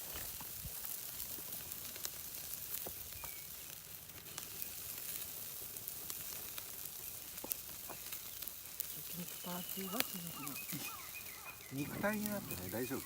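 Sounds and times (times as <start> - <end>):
meat sizzling on a grill: 0.0 - 13.0.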